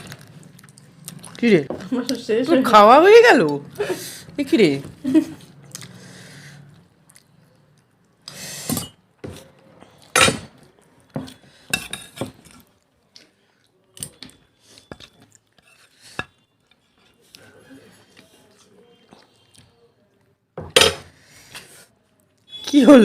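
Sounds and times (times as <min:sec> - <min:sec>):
plates and utensils clinking: 0:11.2 - 0:12.5.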